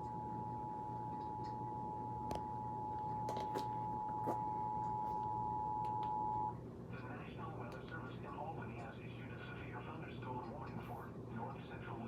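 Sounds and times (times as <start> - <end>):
two-tone alarm signal: 0.0 - 6.6
low hum: 0.0 - 7.1.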